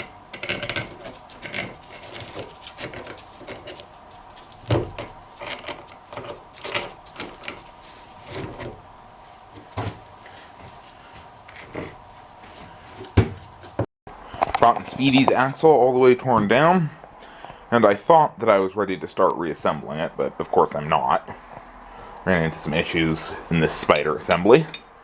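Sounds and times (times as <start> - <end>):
steel parts clinking and knocking: 0.0 - 3.9, 4.8 - 7.7, 23.8 - 24.9.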